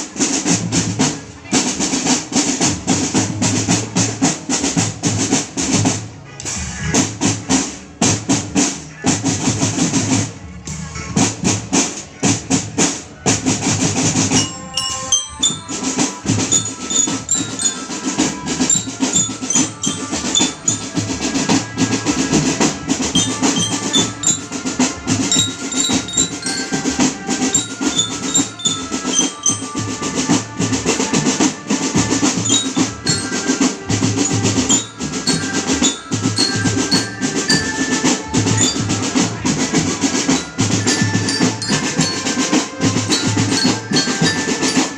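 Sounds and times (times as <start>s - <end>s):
marching drums and rolls: 0.0s - 44.9s
bell-lyra melody: 14.3s - 22.0s, 23.1s - 31.0s, 32.3s - 44.9s.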